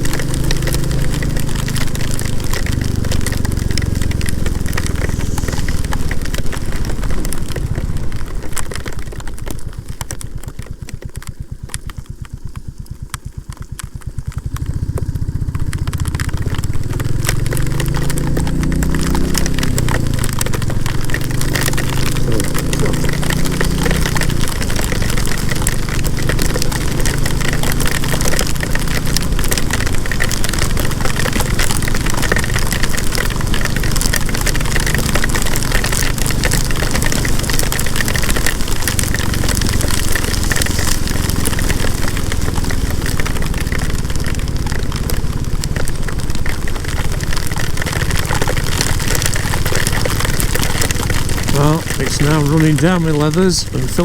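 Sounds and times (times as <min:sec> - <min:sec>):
heavy rain pattering: 0:00.0 - 0:54.0
motorcycle engine: 0:00.0 - 0:54.0
wind rushing: 0:04.5 - 0:08.0.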